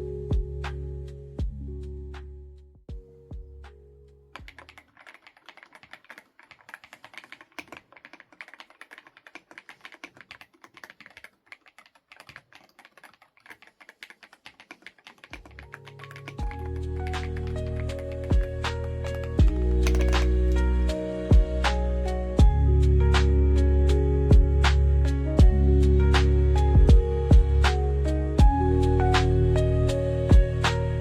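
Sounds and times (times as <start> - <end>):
background music: 0.0 - 4.5, 15.4 - 31.0
mechanical keyboard typing: 4.4 - 20.6.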